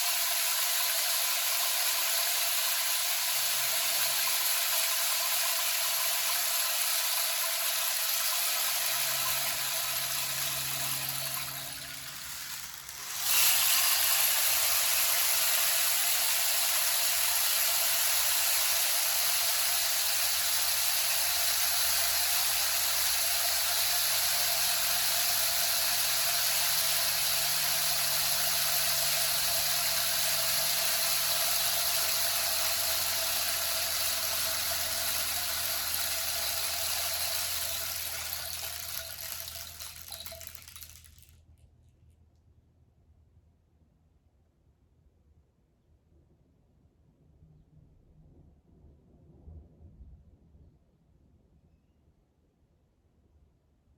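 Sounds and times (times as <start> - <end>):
rain stick pellets pattering: 6.8 - 16.2, 31.3 - 41.4.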